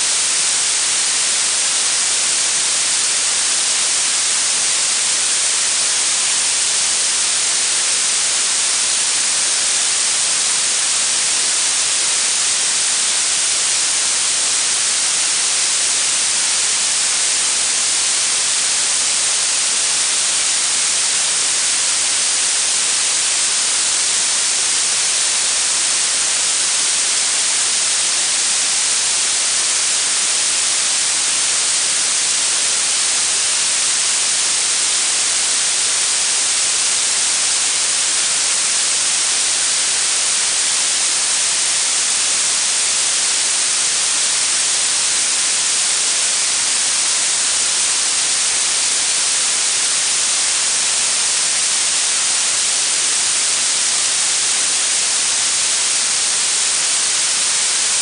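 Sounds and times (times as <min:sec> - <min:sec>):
blue noise hiss: 0:00.0 - 0:58.0.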